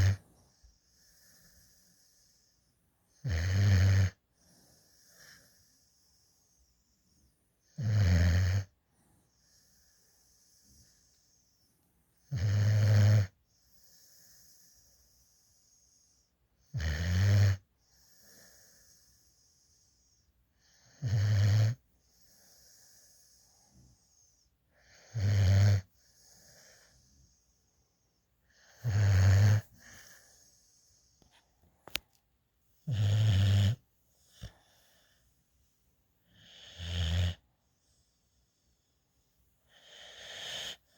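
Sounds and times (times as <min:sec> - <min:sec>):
puppy snoring: 0:00.0 - 0:02.5, 0:03.1 - 0:05.8, 0:07.6 - 0:08.8, 0:12.2 - 0:16.0, 0:16.6 - 0:19.6, 0:20.6 - 0:27.5, 0:28.5 - 0:31.3, 0:32.8 - 0:35.2, 0:36.2 - 0:37.4, 0:39.7 - 0:40.9
soft breathing: 0:00.0 - 0:03.0, 0:04.2 - 0:07.6, 0:08.8 - 0:12.1, 0:25.8 - 0:28.9, 0:29.6 - 0:32.9, 0:33.7 - 0:36.8.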